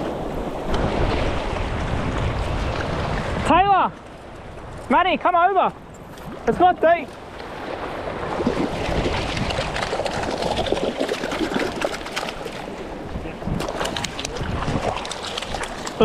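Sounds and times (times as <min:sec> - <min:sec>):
shallow water splashing: 0:06.0 - 0:16.0.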